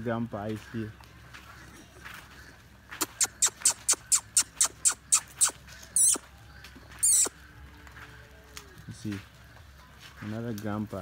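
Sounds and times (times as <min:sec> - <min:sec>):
bird chirping: 0:07.0 - 0:07.3.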